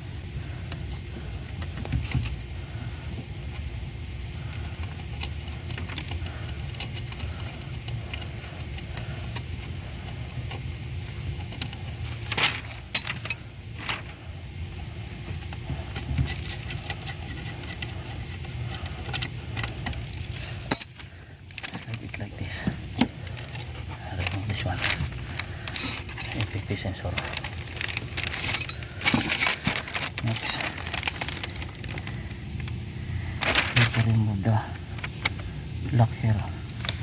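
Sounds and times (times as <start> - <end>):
tools and metal parts rattling: 12.3 - 14.0, 20.6 - 21.9, 25.6 - 31.4
sharp metallic knocks: 20.7 - 21.0.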